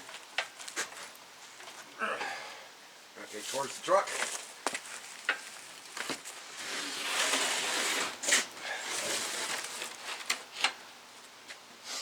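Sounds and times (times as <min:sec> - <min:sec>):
wheels rolling over wooden planks: 0:04.1 - 0:10.8.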